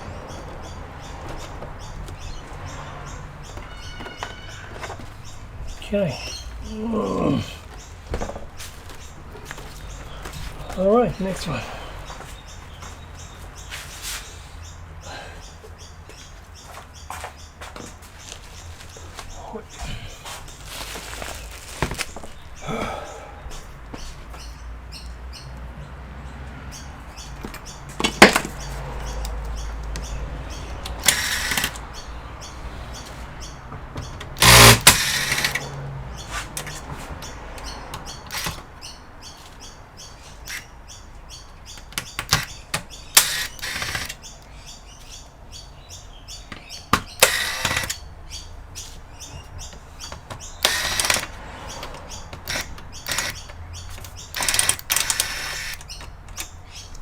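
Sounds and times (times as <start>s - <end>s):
tools clicking on plastic casing: 50.1s - 57.0s.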